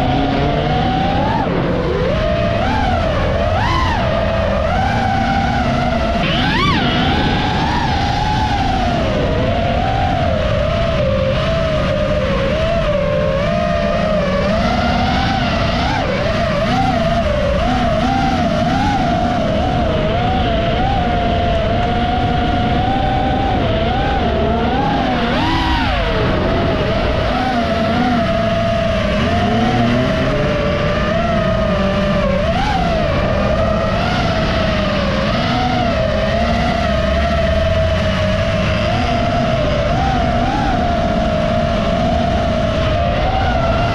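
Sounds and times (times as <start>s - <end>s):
quadcopter motors whining: 0.0s - 43.9s
race car engines: 0.0s - 43.9s
wind rumble: 0.0s - 43.9s
low rumble: 25.9s - 32.2s.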